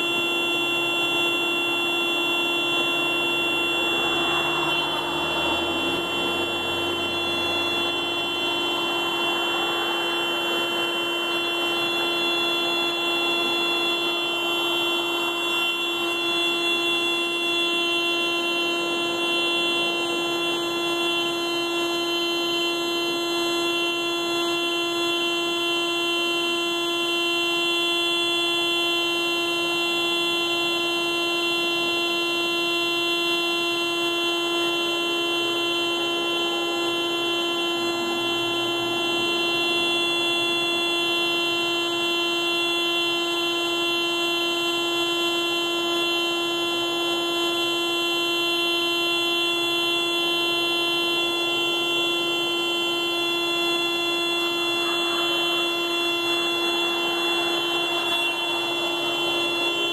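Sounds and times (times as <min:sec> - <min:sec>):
car alarm horn blaring: 0:00.0 - 0:59.9.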